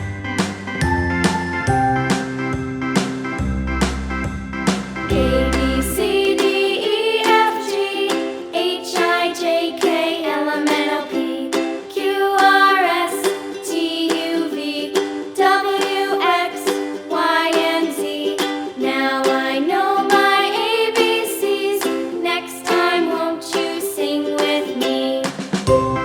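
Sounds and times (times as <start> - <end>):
plucked string accompaniment: 0.0 - 26.0
light background music: 25.7 - 26.0.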